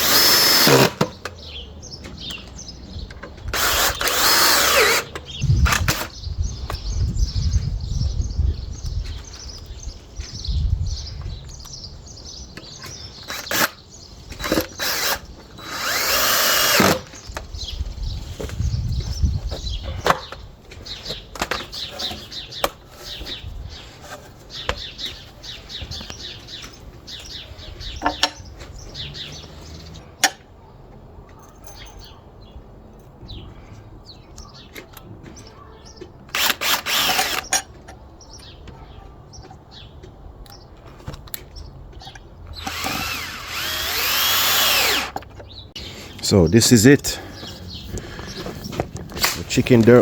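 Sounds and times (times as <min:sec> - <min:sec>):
power drill driving screws: 0:00.0 - 0:01.0, 0:03.5 - 0:06.1, 0:13.2 - 0:13.8, 0:14.4 - 0:17.1, 0:36.3 - 0:37.6, 0:42.6 - 0:45.2
small birds chirping: 0:00.0 - 0:50.0.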